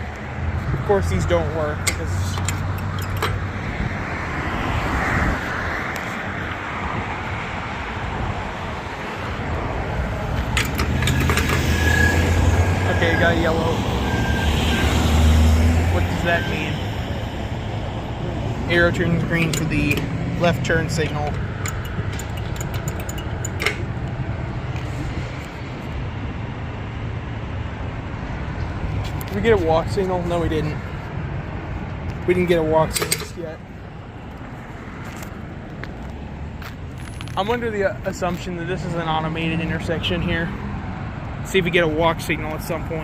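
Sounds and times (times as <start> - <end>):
traffic rumble: 0.0 - 43.0
vehicles passing: 0.0 - 43.0
sharp clicks: 21.3 - 23.8.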